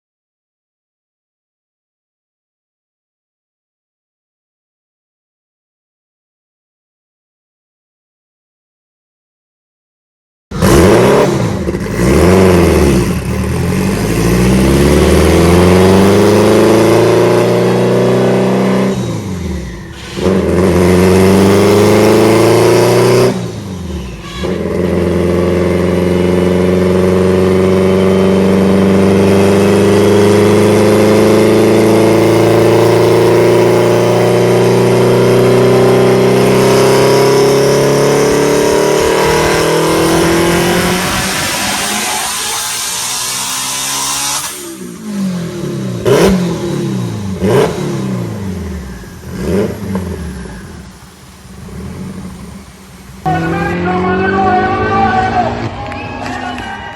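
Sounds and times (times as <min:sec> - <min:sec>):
car engine revving through gears: 0:10.5 - 0:56.0.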